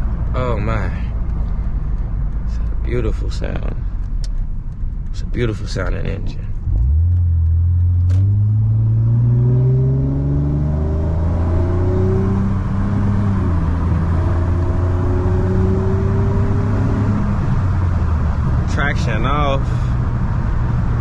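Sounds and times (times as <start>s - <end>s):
car engine accelerating hard: 6.6s - 21.0s.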